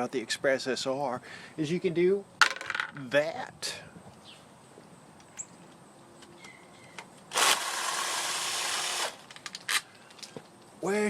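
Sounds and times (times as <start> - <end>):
power tool spinning out bolt: 7.3 - 9.8.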